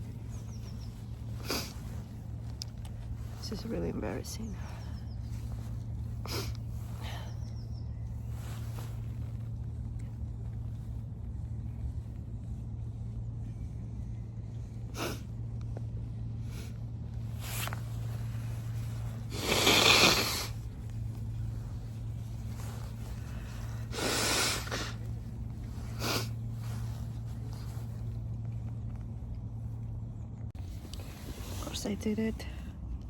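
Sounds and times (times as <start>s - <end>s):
steady low hum: 0.0s - 33.0s
nasal puffs: 17.3s - 28.0s
person blowing nose hard: 19.2s - 20.7s, 23.8s - 25.1s, 25.8s - 26.4s.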